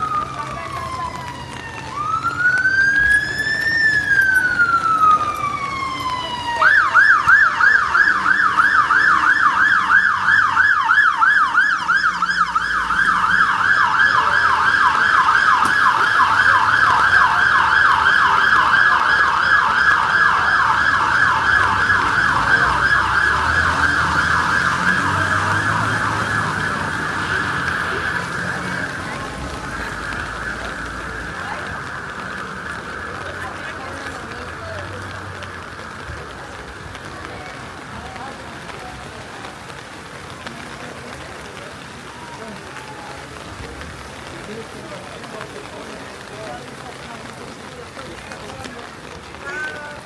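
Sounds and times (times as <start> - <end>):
emergency vehicle siren: 0.0 - 50.0.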